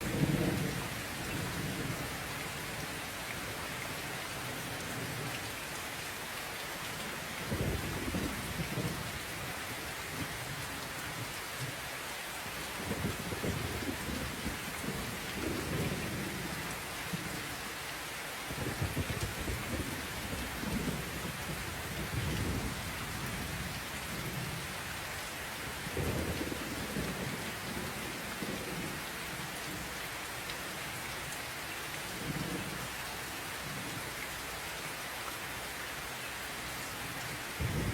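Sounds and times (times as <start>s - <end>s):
steady rain: 0.0s - 37.9s
thunder rumbling: 37.6s - 37.9s.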